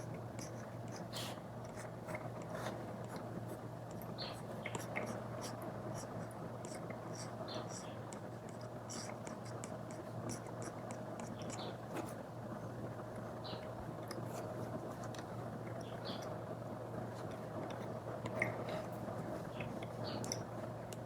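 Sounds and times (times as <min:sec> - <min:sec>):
stylus scratching and tapping on screen: 0:00.0 - 0:12.2
low hum and hiss: 0:00.0 - 0:21.0.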